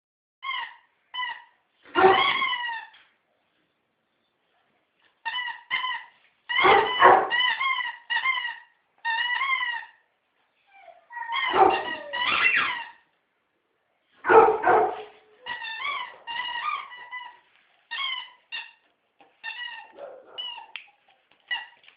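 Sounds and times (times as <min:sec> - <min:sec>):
squeaky dog toy squeaking: 0:00.4 - 0:03.0, 0:05.2 - 0:10.1, 0:10.7 - 0:13.1, 0:14.7 - 0:20.8, 0:21.4 - 0:21.8
dog barking: 0:01.9 - 0:02.4, 0:06.6 - 0:07.4, 0:11.4 - 0:12.6, 0:14.2 - 0:15.2, 0:19.9 - 0:20.6.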